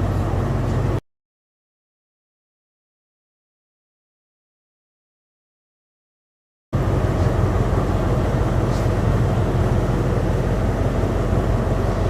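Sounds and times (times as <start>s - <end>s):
diesel train engine idling: 0.0s - 1.0s, 6.8s - 12.0s.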